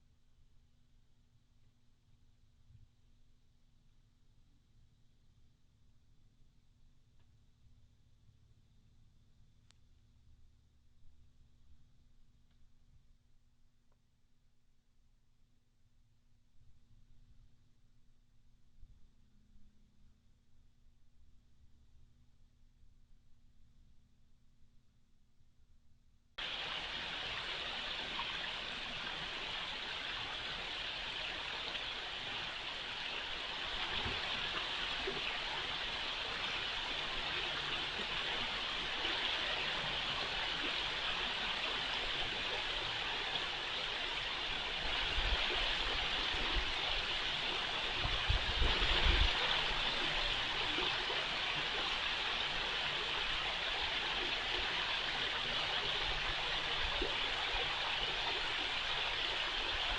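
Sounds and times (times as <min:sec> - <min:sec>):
rushing water: 0:26.4 - 0:59.9.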